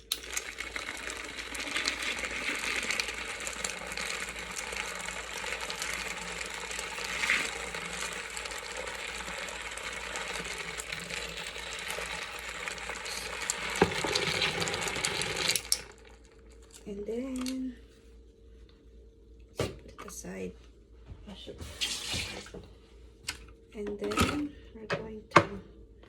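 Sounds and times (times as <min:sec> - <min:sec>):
liquid swishing in a cup: 0:00.2 - 0:16.8.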